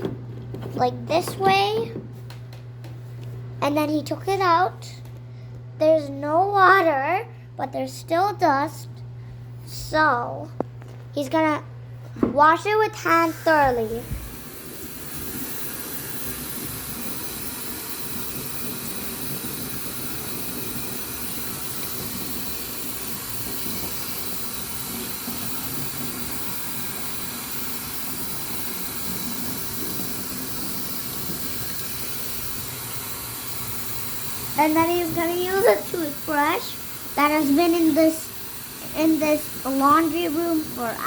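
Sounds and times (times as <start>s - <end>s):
tap water running into sink: 13.5s - 41.0s.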